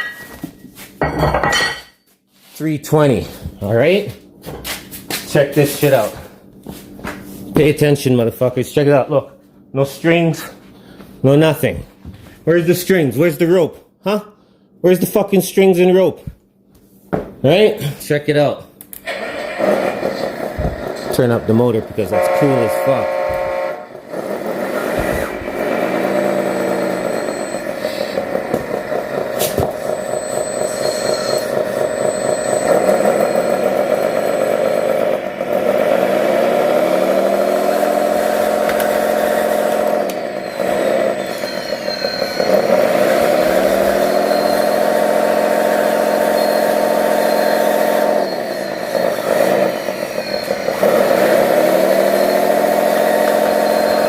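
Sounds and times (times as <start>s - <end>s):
model motor running under load: 19.1s - 54.0s.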